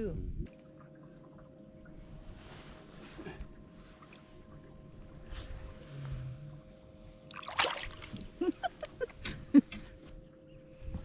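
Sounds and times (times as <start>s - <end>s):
water splashing: 7.3s - 8.5s.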